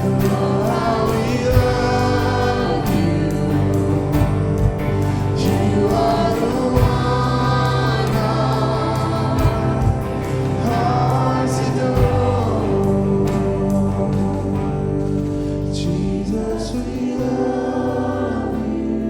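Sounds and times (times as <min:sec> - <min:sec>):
drum hits: 0:00.0 - 0:14.6
held bass notes: 0:00.0 - 0:19.0
people singing: 0:00.0 - 0:19.0
worship band playing: 0:00.0 - 0:19.0.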